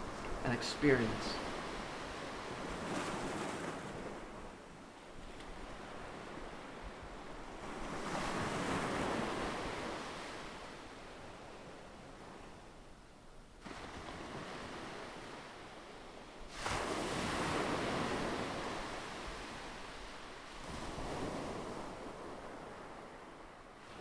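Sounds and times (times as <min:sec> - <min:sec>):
ocean waves breaking: 0:00.0 - 0:12.3.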